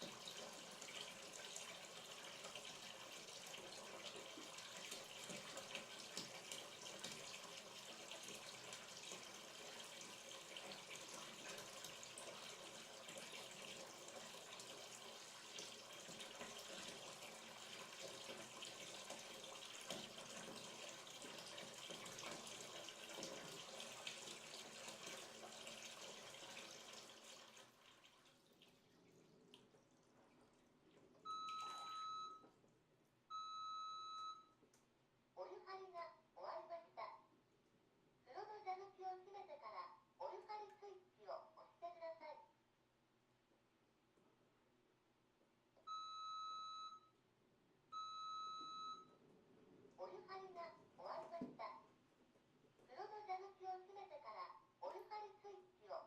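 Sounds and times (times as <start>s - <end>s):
water pouring into bathtub: 0.0s - 32.3s.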